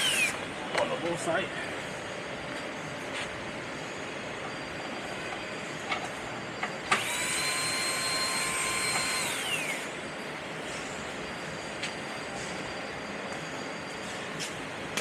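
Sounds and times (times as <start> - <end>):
power tool whining: 0.0 - 0.5, 6.8 - 10.0.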